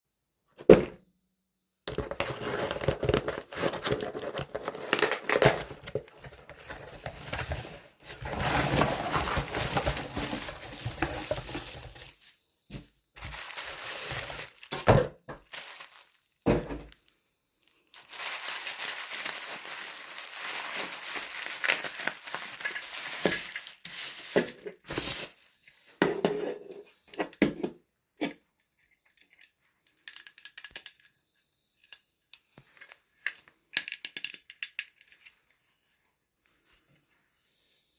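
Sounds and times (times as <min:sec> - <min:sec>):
packaging crinkling and tearing: 0:01.9 - 0:12.4, 0:13.2 - 0:16.5, 0:17.7 - 0:25.4.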